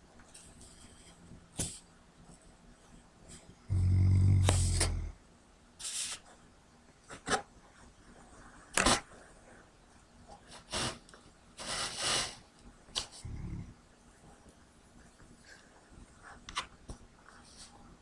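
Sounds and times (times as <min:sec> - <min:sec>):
dog snoring: 0:03.7 - 0:05.2
dog breathing hissily: 0:10.5 - 0:11.0, 0:11.6 - 0:12.5.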